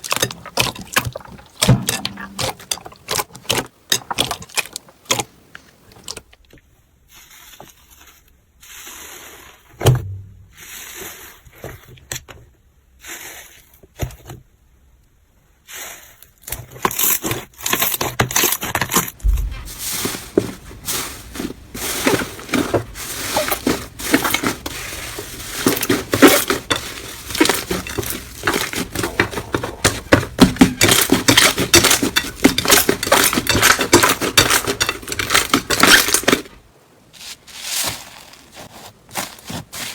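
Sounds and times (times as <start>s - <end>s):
slime squishing: 16.6s - 36.6s.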